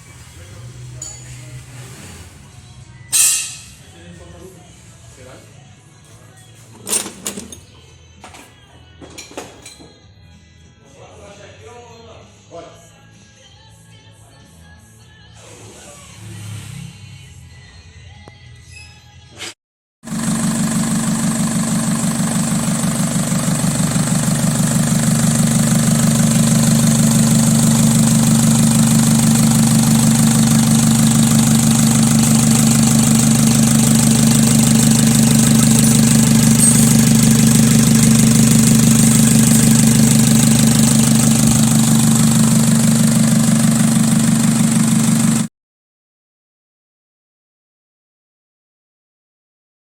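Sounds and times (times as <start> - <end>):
diesel engine idling: 20.1 - 45.5.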